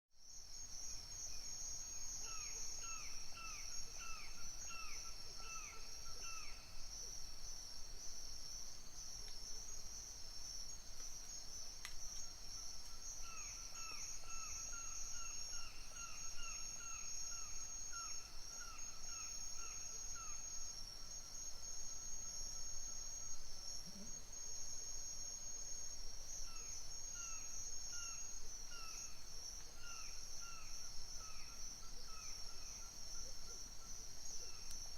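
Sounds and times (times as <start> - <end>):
crickets trilling: 0.2 - 34.9.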